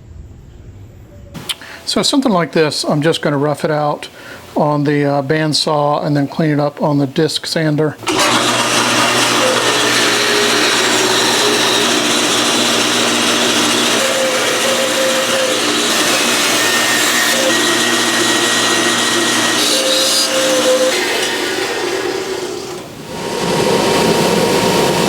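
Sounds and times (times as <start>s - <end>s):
power tool cutting wood: 8.0s - 25.0s.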